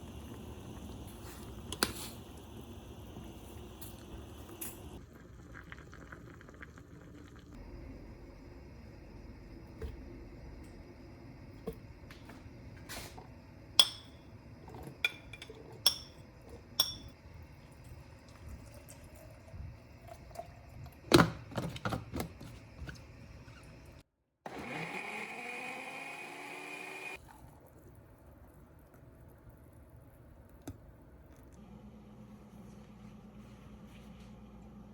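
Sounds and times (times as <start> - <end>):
electric blender motor: 24.5 - 27.2.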